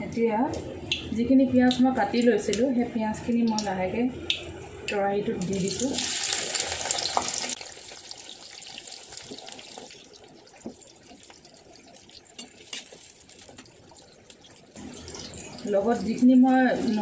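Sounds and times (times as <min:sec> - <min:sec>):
onions sizzling in oil: 0:05.4 - 0:17.0.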